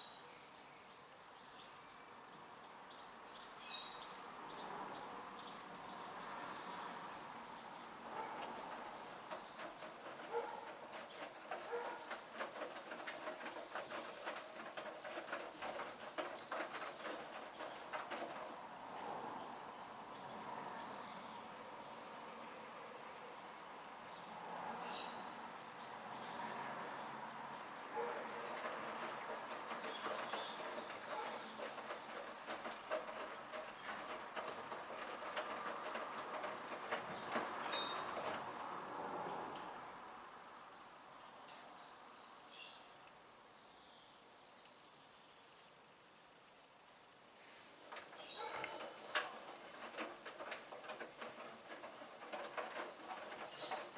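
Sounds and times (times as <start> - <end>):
clothes tumbling clicks and knocks: 7.9 - 19.6, 27.9 - 38.8, 47.8 - 53.9
washing machine drum sloshing: 8.1 - 19.4, 28.0 - 38.6, 47.8 - 53.9.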